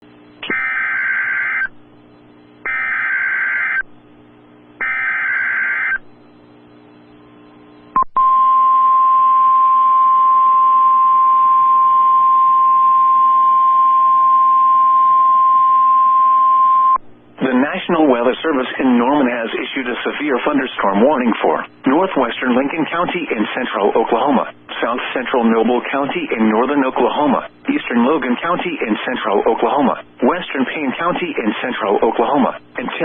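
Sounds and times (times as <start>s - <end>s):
steady single-pitch alarm tone: 0.4s - 1.8s, 2.6s - 3.9s, 4.8s - 6.1s, 8.2s - 17.0s.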